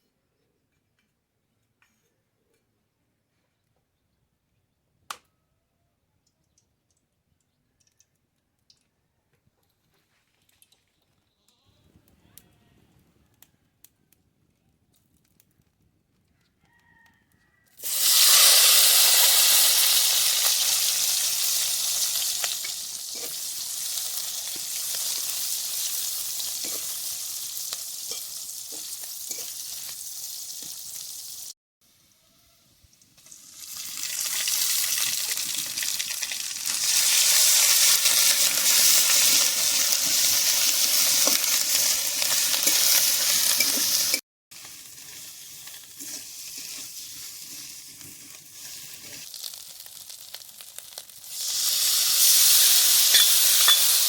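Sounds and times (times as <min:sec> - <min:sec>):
food sizzling in hot oil: 0:17.8 - 0:31.6, 0:32.9 - 0:54.0.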